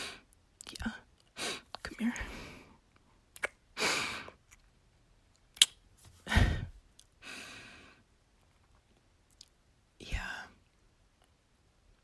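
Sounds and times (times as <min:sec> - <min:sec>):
woman breathing: 0:01.4 - 0:02.8, 0:06.2 - 0:08.1.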